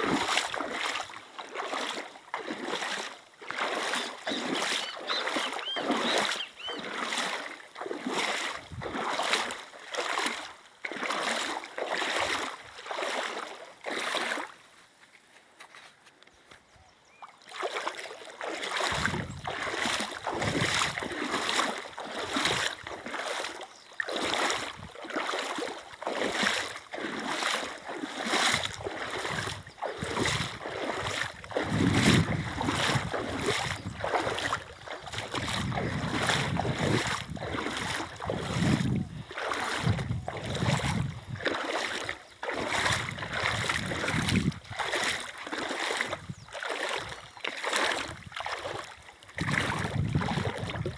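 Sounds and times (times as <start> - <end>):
water splashing: 0.0 - 14.5, 17.2 - 50.9
rush of running water: 17.5 - 50.9.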